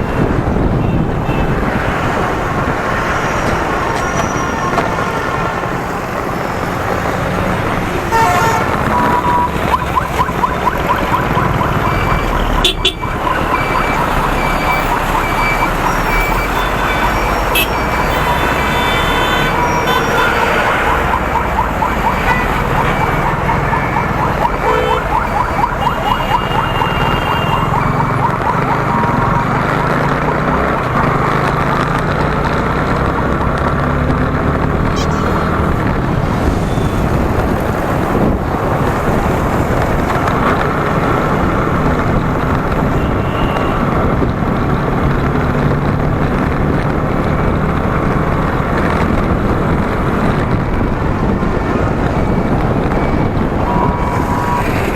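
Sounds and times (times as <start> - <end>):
motorcycle engine and road noise: 0.0 - 54.9
vehicle horn toots: 8.1 - 9.5, 12.4 - 13.1, 16.0 - 20.8, 24.6 - 25.1, 42.9 - 43.8.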